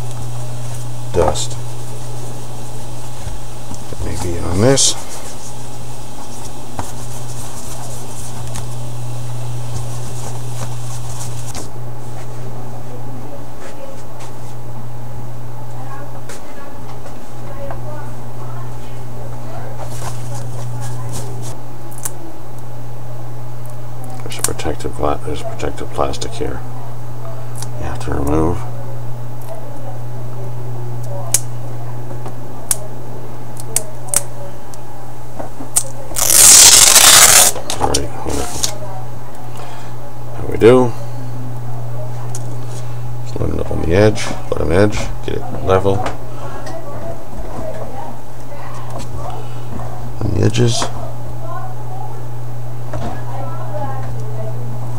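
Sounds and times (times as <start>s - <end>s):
steady low hum: 0.0s - 54.9s
light rubbing and scratching: 6.2s - 8.4s.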